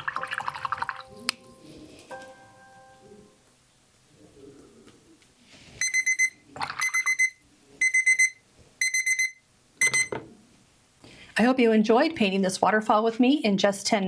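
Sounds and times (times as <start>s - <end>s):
digital timer alarm beeping: 5.8s - 10.2s.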